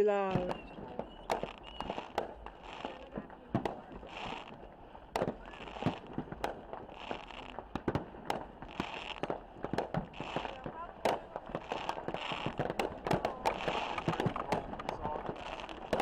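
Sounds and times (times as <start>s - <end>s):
fireworks bangs and pops: 0.0s - 16.0s
fireworks hissing bursts: 0.0s - 16.0s.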